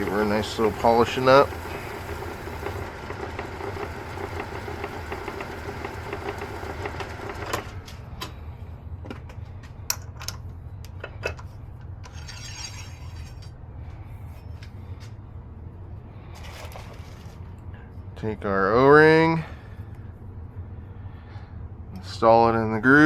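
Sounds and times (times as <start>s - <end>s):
hissy rattle: 0.0s - 7.8s
metal lathe spinning: 0.0s - 8.0s
low hum: 0.0s - 23.0s.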